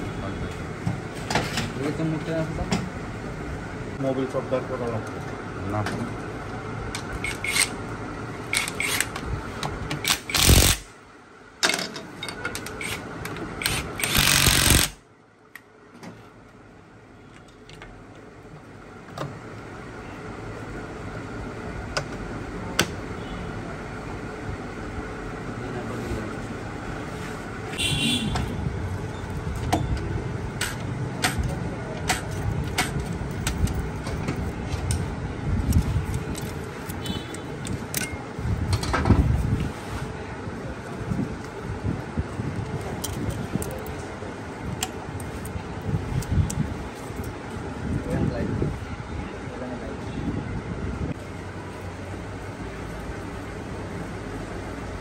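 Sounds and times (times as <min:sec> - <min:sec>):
hand tools clicking and knocking: 0:07.0 - 0:07.7, 0:29.6 - 0:35.0
very loud bursts: 0:13.6 - 0:15.0.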